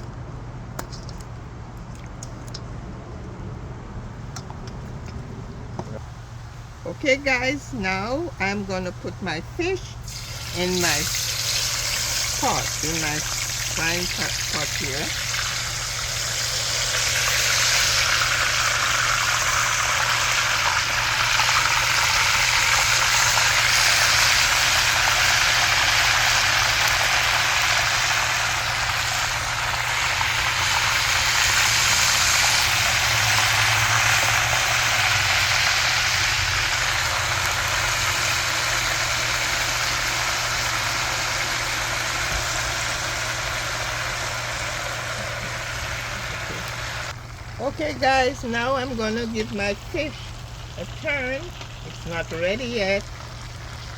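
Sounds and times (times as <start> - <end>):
fish sizzling in hot oil: 10.0 - 47.4, 48.4 - 53.9.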